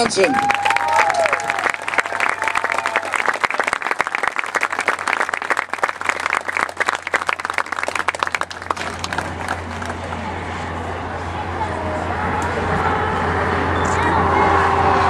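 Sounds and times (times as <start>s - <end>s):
audience applauding: 0.0s - 10.4s.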